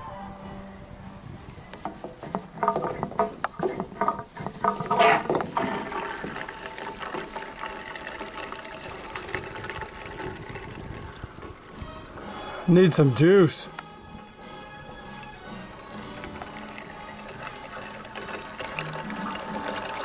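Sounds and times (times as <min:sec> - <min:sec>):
knocks and clatters: 0:01.8 - 0:05.7
liquid pouring: 0:04.6 - 0:11.7, 0:15.2 - 0:20.0.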